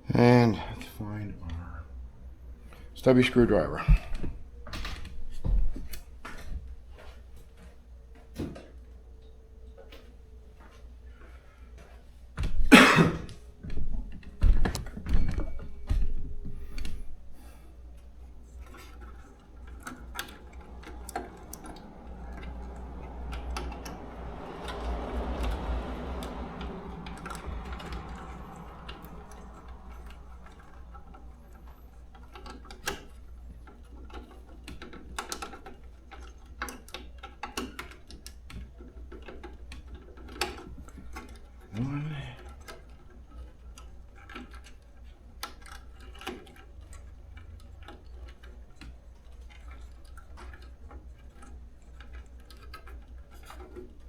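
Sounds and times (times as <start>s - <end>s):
hand tools clattering and knocking: 12.5s - 54.0s.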